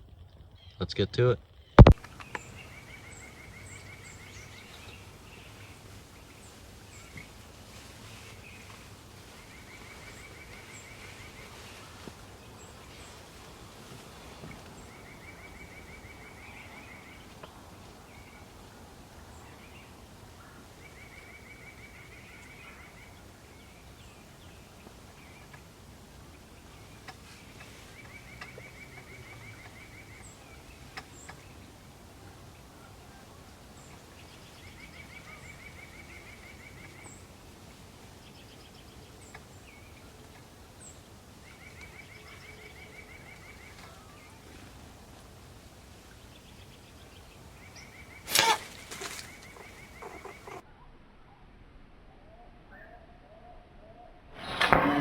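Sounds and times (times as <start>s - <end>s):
bird rapid trill: 48.3s - 50.6s.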